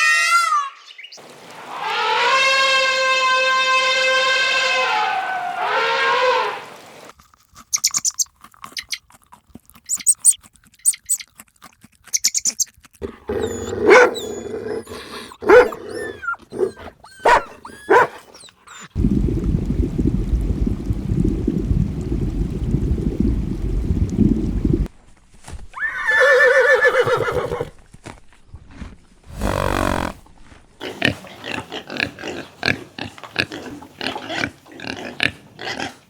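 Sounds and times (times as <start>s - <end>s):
rising and falling cries: 1.5s - 6.9s
rapid high chirping: 7.7s - 9.0s, 9.9s - 11.3s, 12.1s - 12.7s
dog-like barks and yelps: 13.1s - 19.0s
low rumbling noise: 19.0s - 24.9s.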